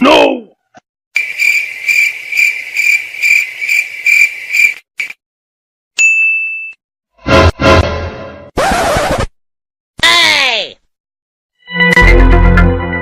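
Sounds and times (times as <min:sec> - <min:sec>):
cricket chirping: 0:01.2 - 0:05.1.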